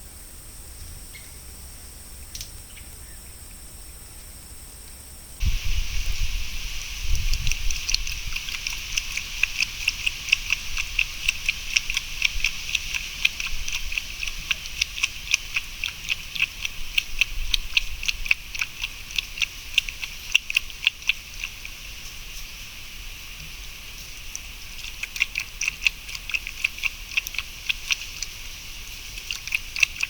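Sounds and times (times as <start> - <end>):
rapid irregular ticks: 5.4 - 22.6, 23.4 - 30.0.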